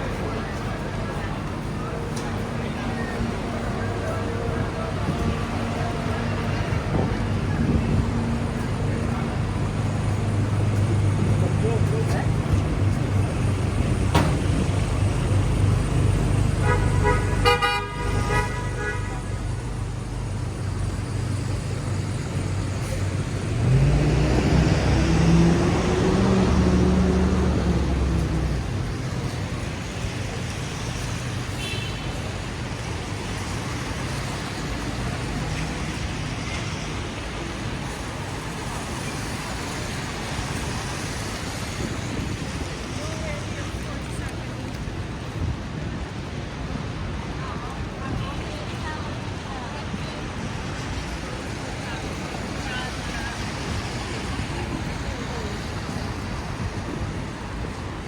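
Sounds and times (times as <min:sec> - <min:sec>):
heavy vehicle engine passing: 0:00.0 - 0:31.5
city street traffic: 0:00.0 - 0:58.0
car horn honking: 0:16.6 - 0:19.4.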